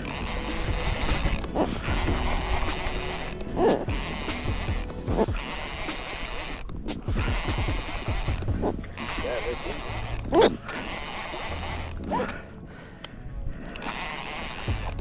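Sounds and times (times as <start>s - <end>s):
wind and water hiss: 0.0s - 8.4s.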